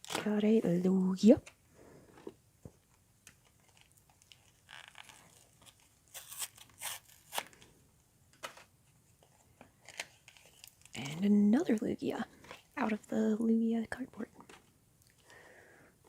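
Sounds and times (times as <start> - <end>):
trading cards rustling: 8.4 - 13.1.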